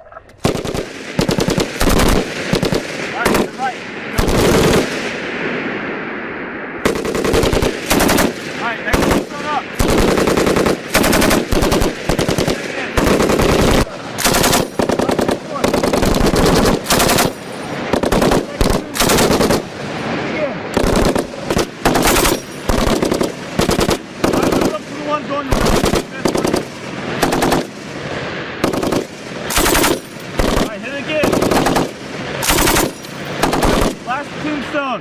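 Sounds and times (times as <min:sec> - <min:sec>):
machine guns firing bursts: 0:00.4 - 0:05.2, 0:06.8 - 0:19.7, 0:20.8 - 0:27.9, 0:28.6 - 0:34.2
gunshot echoing: 0:00.4 - 0:05.8, 0:06.8 - 0:19.8.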